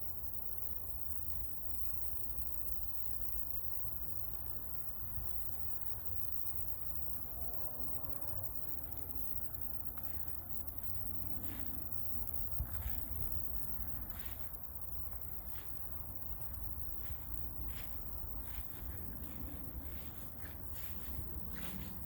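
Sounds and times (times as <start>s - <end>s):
footsteps on a path: 9.9s - 22.0s.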